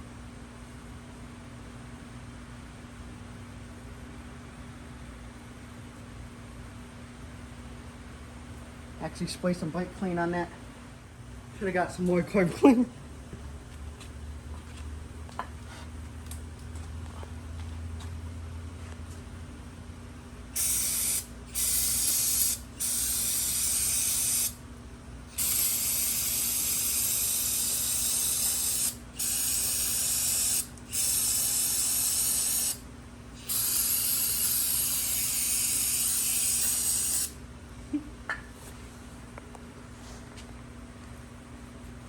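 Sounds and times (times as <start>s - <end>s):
aerosol can spraying: 20.6s - 24.6s, 25.4s - 32.8s, 33.4s - 37.4s.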